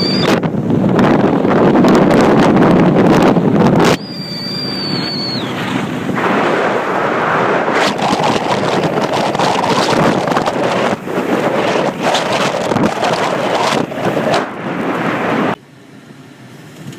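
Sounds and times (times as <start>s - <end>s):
wind rushing over microphone: 0.0s - 15.6s
high whine: 0.0s - 15.7s
boat engine: 0.0s - 16.9s
water under boat: 4.8s - 15.6s.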